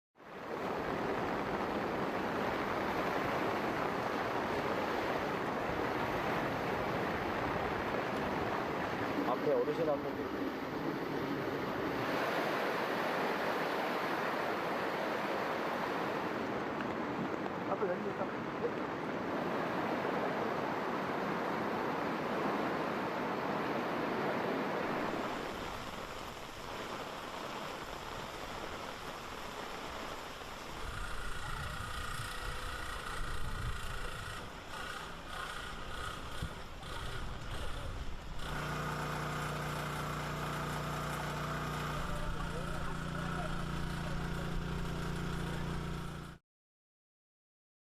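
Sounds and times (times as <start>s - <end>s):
floodwater rushing: 0.2s - 46.4s.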